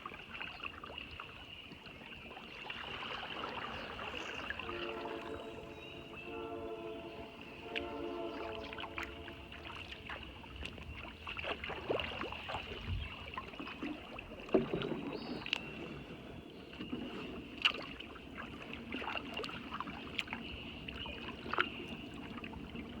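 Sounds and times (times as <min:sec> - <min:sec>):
kayak paddle splashing in water: 0:02.1 - 0:06.0, 0:07.4 - 0:15.9, 0:16.7 - 0:23.0
water dripping: 0:07.4 - 0:12.6.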